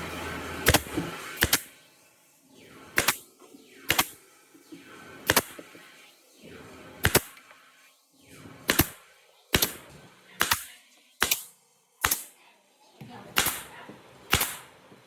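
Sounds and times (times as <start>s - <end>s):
tool striking wood: 0.7s - 1.7s, 5.3s - 5.6s, 8.7s - 9.0s, 11.2s - 12.3s.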